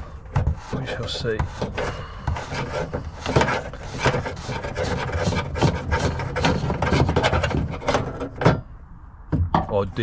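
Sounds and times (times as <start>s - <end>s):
rubbing and scraping handling noise: 0.0s - 8.7s.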